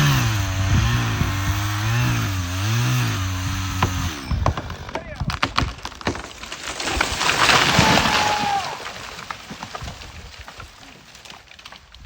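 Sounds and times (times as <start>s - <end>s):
tree falling with crashing branches: 3.6s - 12.0s.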